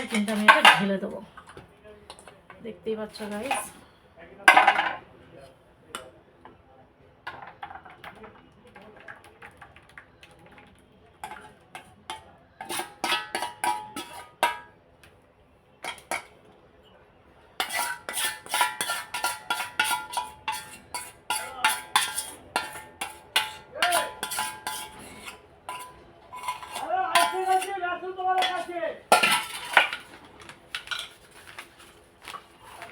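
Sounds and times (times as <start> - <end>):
spoon clinking and scraping bowl: 0.0 - 2.2, 3.2 - 3.8, 11.2 - 14.7, 15.8 - 16.4, 17.6 - 31.6.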